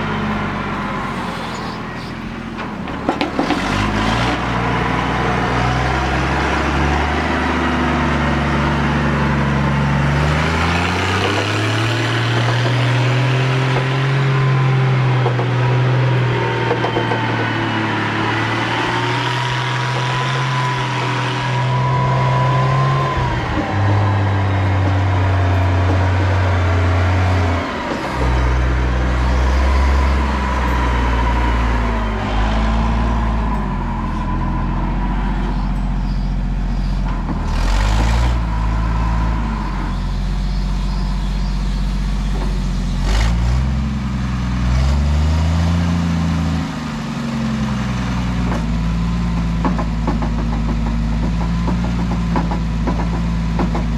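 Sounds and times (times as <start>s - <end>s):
telehandler engine running under load: 0.0s - 53.9s.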